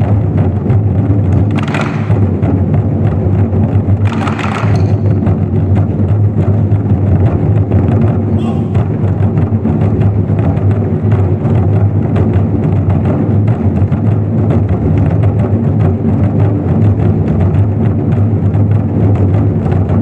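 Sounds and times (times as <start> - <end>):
large drums struck in ensemble: 0.0 - 20.0.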